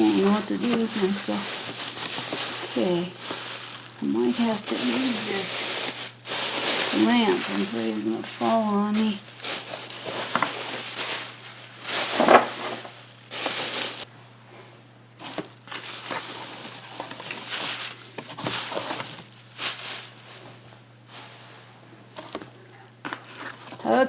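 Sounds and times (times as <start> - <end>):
packing paper crumpling: 0.0 - 14.1, 15.2 - 20.5, 22.2 - 24.0
padlocks rummaged in box: 0.0 - 14.1, 15.2 - 20.2.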